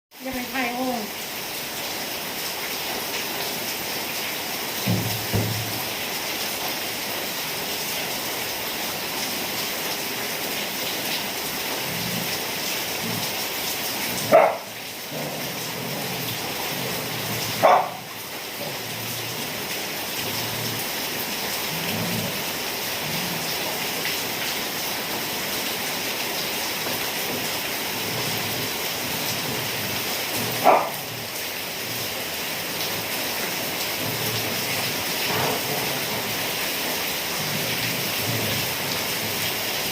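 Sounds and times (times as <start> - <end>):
steady rain falling: 0.1 - 39.9.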